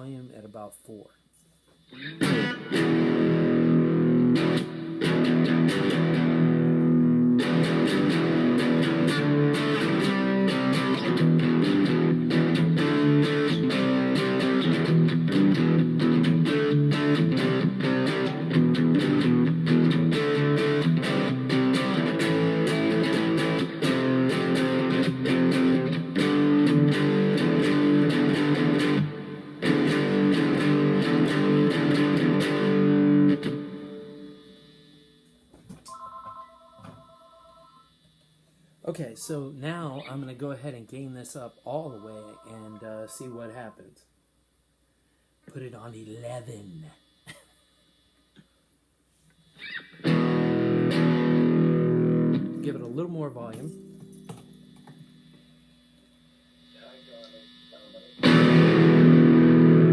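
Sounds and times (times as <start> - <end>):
distorted electric guitar: 1.9 - 36.0, 49.5 - 59.9.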